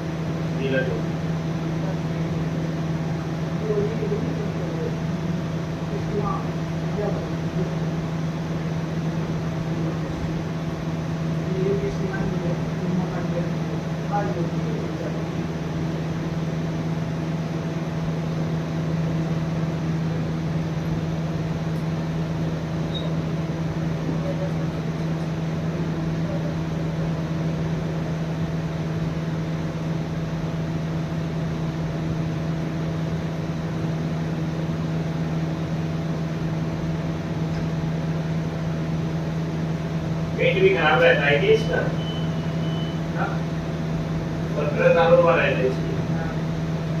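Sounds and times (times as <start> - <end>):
steady machine hum: 0.0 - 47.0.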